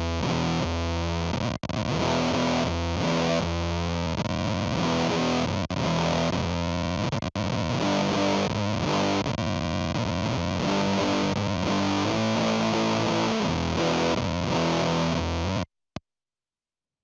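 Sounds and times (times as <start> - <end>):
distorted electric guitar: 0.0 - 15.7.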